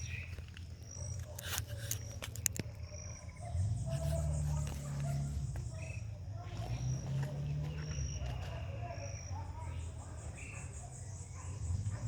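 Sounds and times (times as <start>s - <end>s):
insects chirping: 0.0s - 12.0s.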